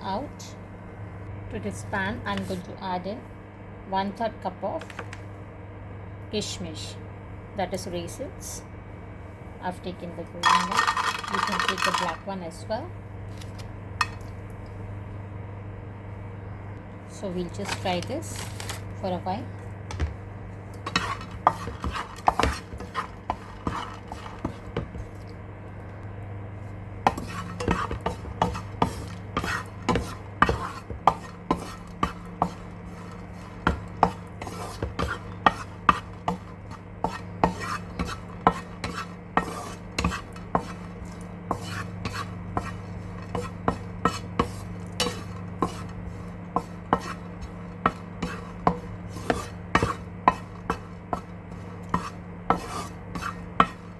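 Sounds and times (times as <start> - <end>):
steady low hum: 0.0 - 53.9
spatula scraping frying pan: 10.4 - 12.2, 20.8 - 25.0, 27.1 - 53.9.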